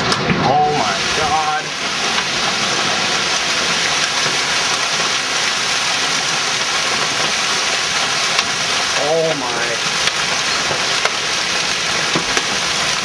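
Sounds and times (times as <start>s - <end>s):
hail hitting a house: 0.0s - 13.0s.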